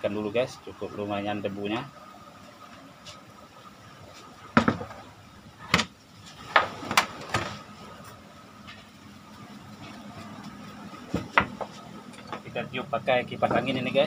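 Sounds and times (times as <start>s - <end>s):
fan parts knocking and clacking: 9.8s - 12.6s.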